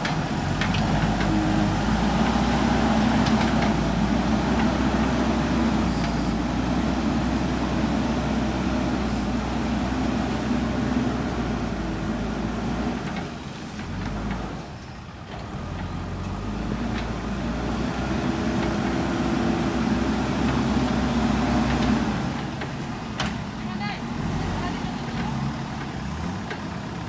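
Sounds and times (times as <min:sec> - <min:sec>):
diesel engine revving: 0:00.0 - 0:27.0.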